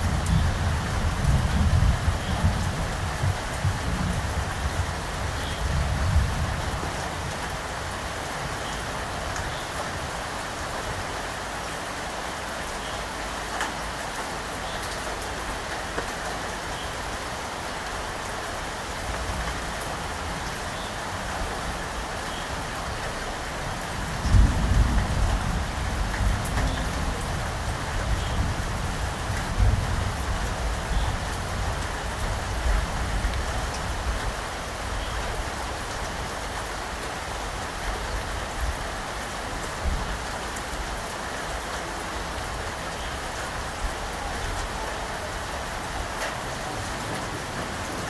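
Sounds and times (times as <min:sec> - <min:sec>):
steady rain falling: 0:00.0 - 0:48.0
thunder rumbling: 0:24.0 - 0:34.4.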